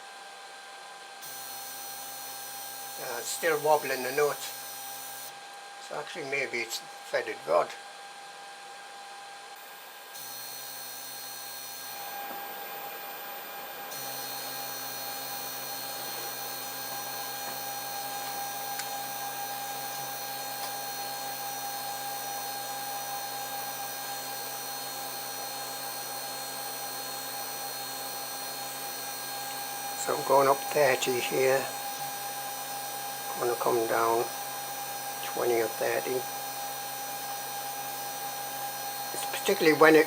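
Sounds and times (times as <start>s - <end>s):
stepper motors whining: 9.6s - 37.0s.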